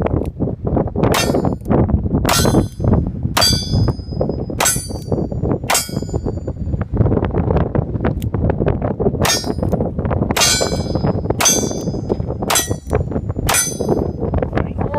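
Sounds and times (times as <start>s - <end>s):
wind buffeting microphone: 0.0s - 14.9s
steel targets ringing: 1.2s - 1.6s, 2.3s - 6.3s, 9.3s - 9.7s, 10.4s - 14.2s.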